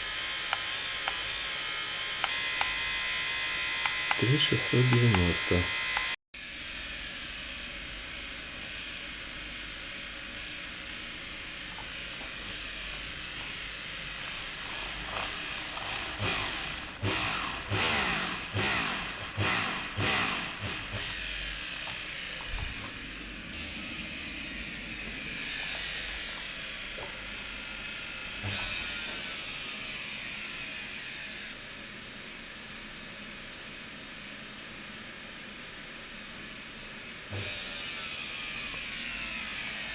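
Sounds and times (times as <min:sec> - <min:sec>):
washing machine motor running: 0:00.0 - 0:06.2, 0:07.4 - 0:31.4
motor power surges: 0:00.1 - 0:06.2.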